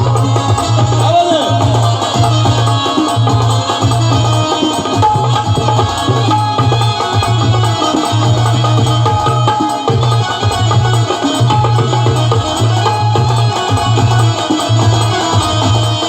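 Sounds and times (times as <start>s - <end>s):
hand drums rhythm: 0.0s - 16.0s.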